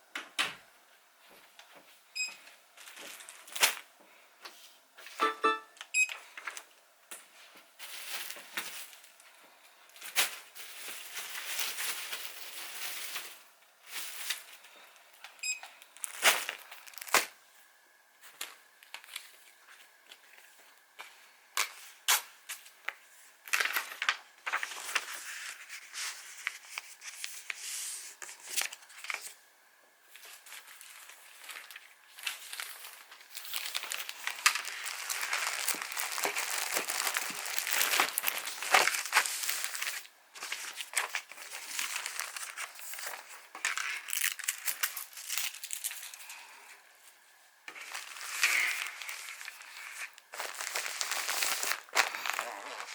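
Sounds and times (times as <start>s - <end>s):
packaging crinkling and rustling: 2.7s - 3.9s, 6.2s - 17.4s, 18.2s - 20.9s, 21.6s - 29.4s, 30.1s - 52.9s.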